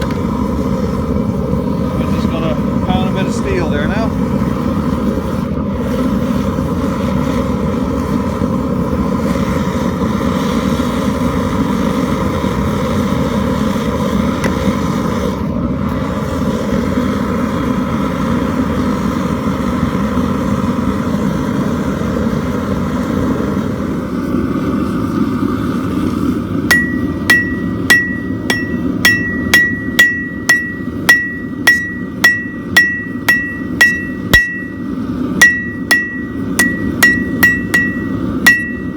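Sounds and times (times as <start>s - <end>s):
forge roaring: 0.0s - 38.9s
hammer striking steel on anvil: 26.7s - 38.9s.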